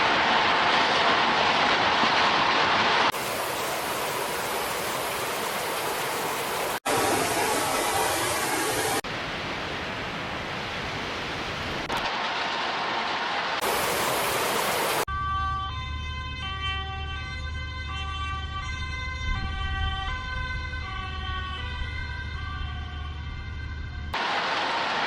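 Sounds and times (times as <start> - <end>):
two-tone siren: 15.1 - 24.2.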